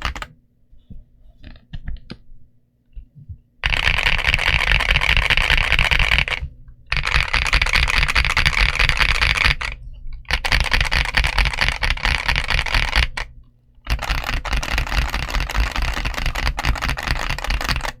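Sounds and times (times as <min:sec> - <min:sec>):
mechanical keyboard typing: 0:00.0 - 0:00.3, 0:03.6 - 0:13.3, 0:13.9 - 0:18.0.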